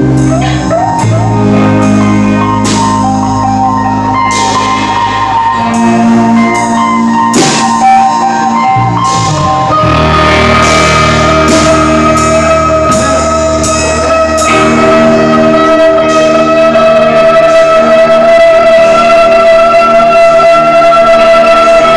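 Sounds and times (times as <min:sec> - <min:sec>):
live rock band playing: 0:00.0 - 0:21.9
cymbal crashes: 0:07.3 - 0:08.2, 0:09.1 - 0:15.5.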